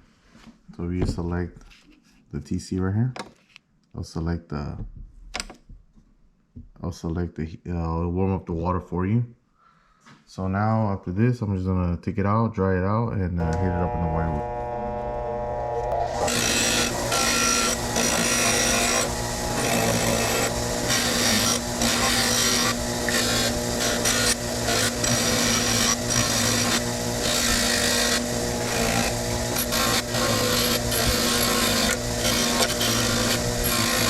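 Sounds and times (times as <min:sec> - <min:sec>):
wire wheel scrubbing metal: 0:14.4 - 0:34.0.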